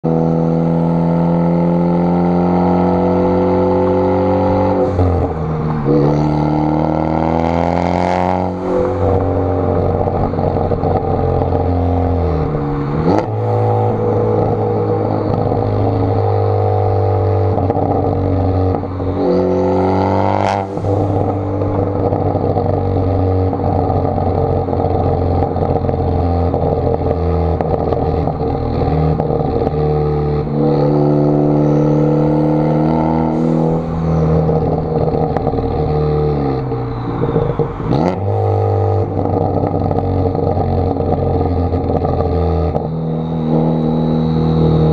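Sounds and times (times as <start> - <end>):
car engine revving: 0.0 - 44.9
exhaust crackles and pops: 21.2 - 30.6, 33.7 - 44.2.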